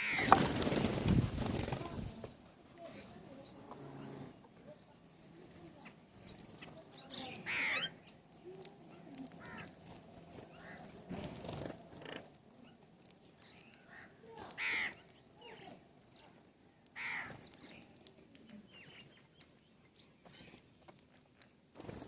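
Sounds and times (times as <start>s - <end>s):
quiet bird calls: 2.8s - 21.2s
loud short bird calls: 7.2s - 8.0s, 13.8s - 15.0s, 17.0s - 17.5s.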